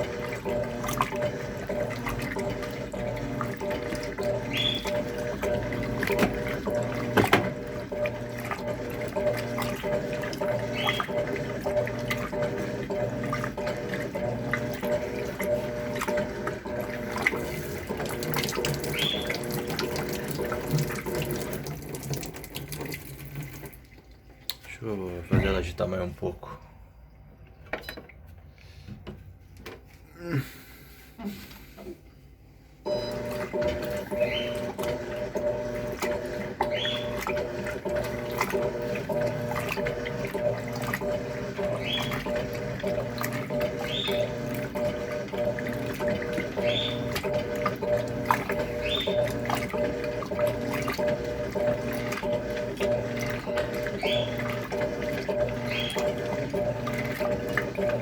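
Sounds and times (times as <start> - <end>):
water splashing in washing machine: 0.0 - 26.5, 32.9 - 58.0
washing machine hum: 0.0 - 58.0.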